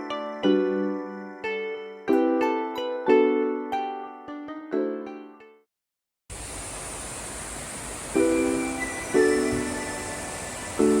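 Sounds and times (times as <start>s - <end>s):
steady hiss: 6.3s - 11.0s.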